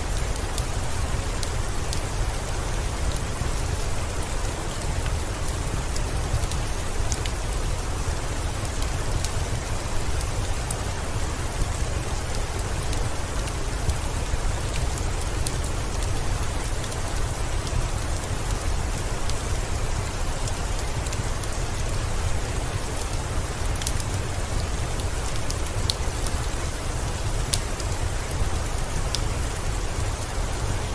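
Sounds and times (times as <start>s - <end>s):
heavy rain falling: 0.0s - 30.9s
wood fire popping and crackling: 0.1s - 30.9s.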